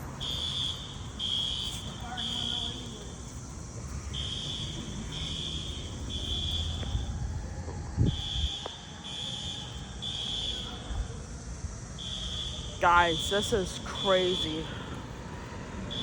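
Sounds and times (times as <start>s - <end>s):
fire alarm beeping: 0.0s - 3.4s, 4.0s - 14.9s.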